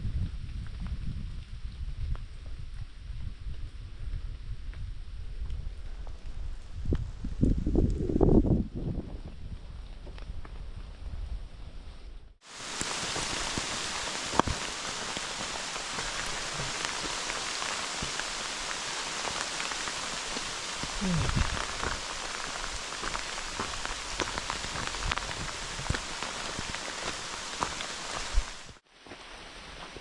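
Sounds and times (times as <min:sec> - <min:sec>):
rain falling: 0:12.4 - 0:30.0.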